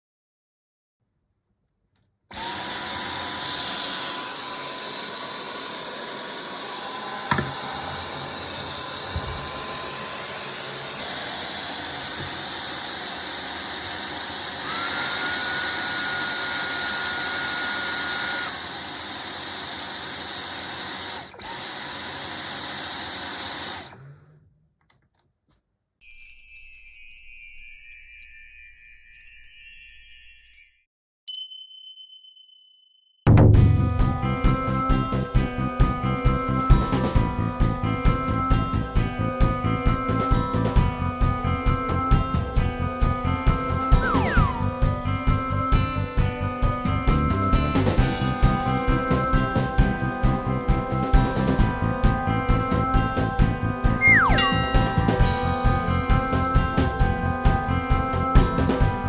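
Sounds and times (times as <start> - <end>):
stick vacuum motor whine: 2.3 - 24.4, 43.7 - 45.2
chiming musical sound effect: 26.0 - 33.2, 54.0 - 56.1.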